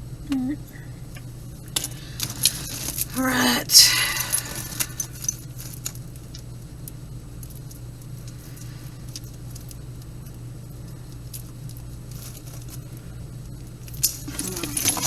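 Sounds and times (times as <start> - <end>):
steady low hum: 0.0 - 15.0
jewelry clicking and clinking: 1.7 - 10.4, 13.8 - 15.0.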